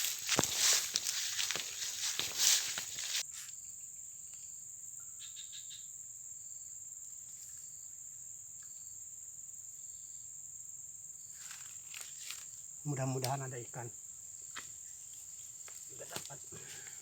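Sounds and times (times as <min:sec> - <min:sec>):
brief rustle: 0:00.0 - 0:03.5
high-pitched insect chorus: 0:00.0 - 0:17.0.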